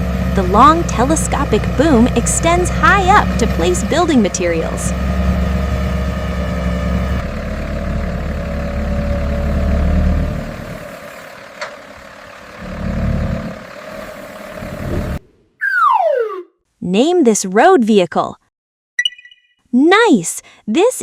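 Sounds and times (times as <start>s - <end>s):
diesel engine running: 0.0s - 15.3s.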